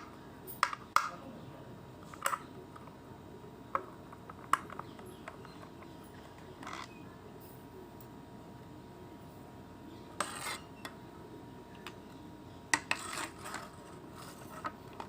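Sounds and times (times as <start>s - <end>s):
soft scrape: 10.2s - 10.7s, 12.9s - 14.7s.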